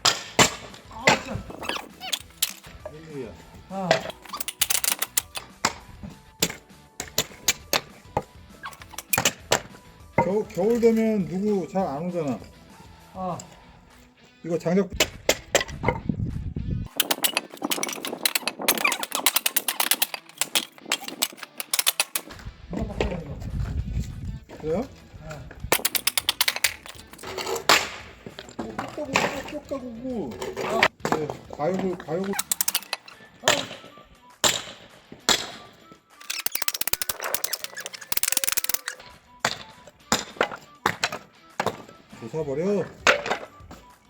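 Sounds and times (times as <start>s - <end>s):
clatter of clicks: 1.6s - 2.7s, 4.1s - 5.5s, 8.6s - 9.3s, 16.9s - 22.4s, 25.7s - 27.4s, 32.3s - 33.2s, 36.2s - 39.0s.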